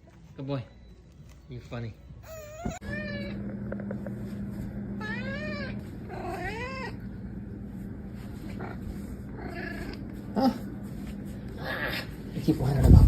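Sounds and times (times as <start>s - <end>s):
steady low hum: 2.0s - 13.0s
cat meowing: 2.2s - 3.4s, 5.0s - 7.0s.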